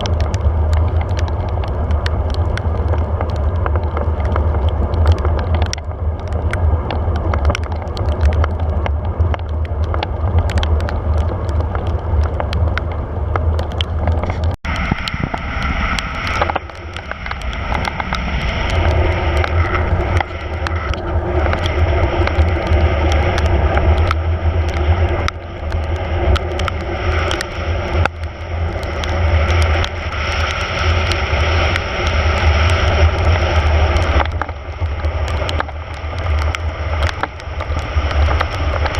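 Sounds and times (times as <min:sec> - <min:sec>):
bicycle road noise: 0:00.0 - 0:38.9
wind rumbling on microphone: 0:00.0 - 0:38.9.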